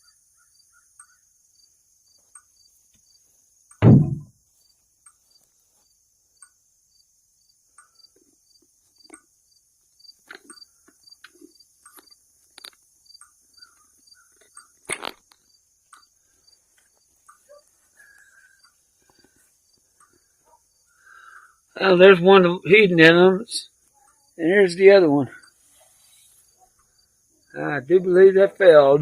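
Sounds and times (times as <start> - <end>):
insects chirping: 0.0 - 29.0
heavy deep thud: 3.8 - 4.3
knocks and clunks: 3.8 - 4.3.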